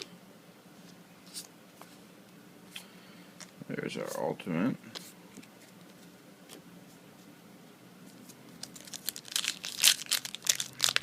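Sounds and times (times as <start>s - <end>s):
foil pack tearing and crinkling: 8.6s - 11.0s.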